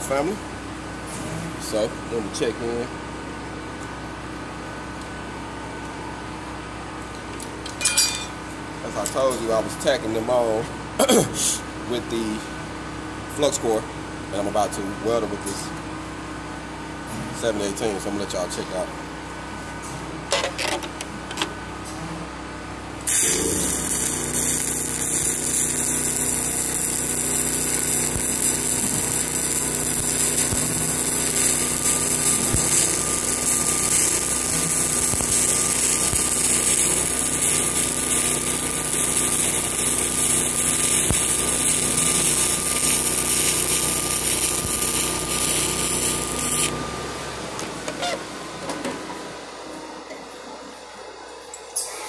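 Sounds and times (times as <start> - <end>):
welding machine hum: 22.7 - 48.4
welding arc crackling and hissing: 23.0 - 46.8.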